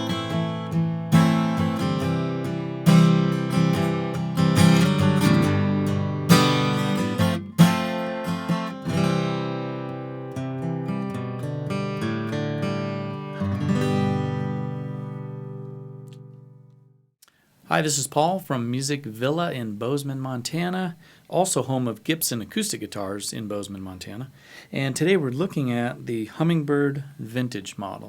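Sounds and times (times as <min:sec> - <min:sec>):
acoustic guitar strummed chords: 0:00.0 - 0:17.0.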